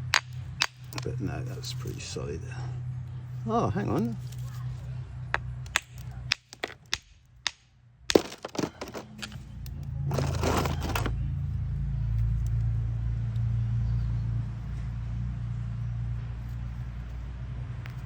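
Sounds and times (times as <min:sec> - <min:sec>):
stone pieces clicking and knocking: 0:00.0 - 0:01.1, 0:05.6 - 0:09.4
stone scraping: 0:08.1 - 0:09.4, 0:10.1 - 0:11.1.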